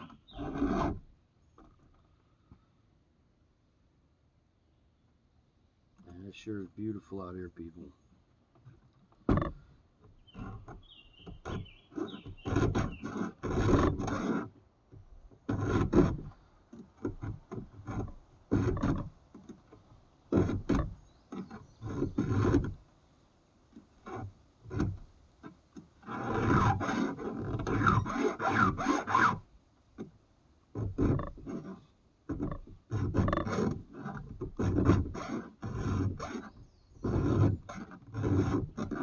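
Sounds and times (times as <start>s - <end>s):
file rasping on chainsaw chain: 0.0s - 1.0s, 10.3s - 14.6s, 15.5s - 19.5s, 20.3s - 22.8s, 24.0s - 29.4s, 30.8s - 39.0s.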